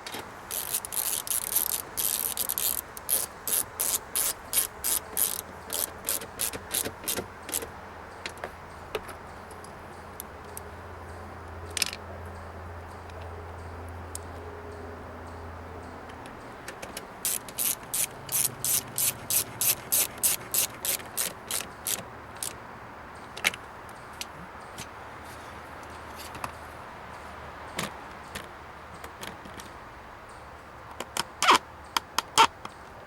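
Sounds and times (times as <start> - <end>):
ratchet wrench clicking: 0.0 - 7.7, 16.9 - 22.6.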